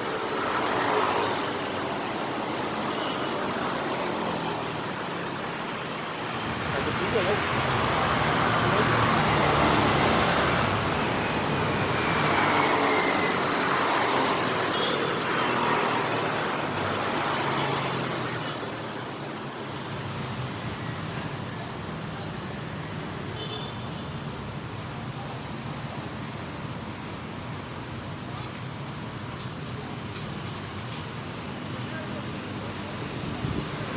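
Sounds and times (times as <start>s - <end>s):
motorcycles and cars passing: 0.0s - 22.3s.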